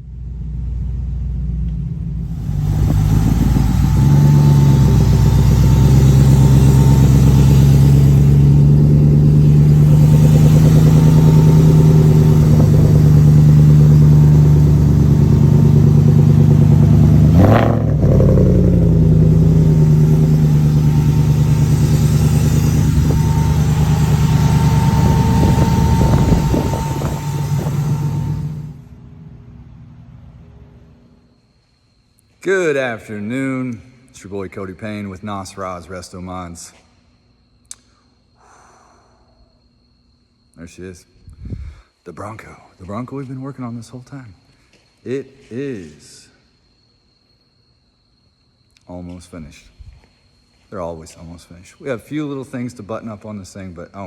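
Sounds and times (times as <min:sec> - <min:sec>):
car engine running: 0:00.1 - 0:28.8
sharp whoosh: 0:02.2 - 0:13.2.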